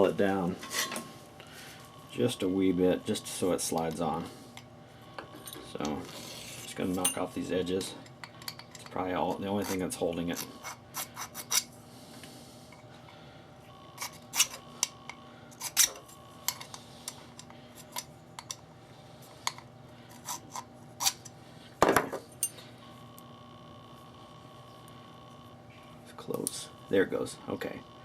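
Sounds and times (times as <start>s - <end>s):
metal being filed and handled: 0.6s - 1.0s, 8.4s - 11.7s, 14.0s - 15.0s, 19.4s - 21.3s.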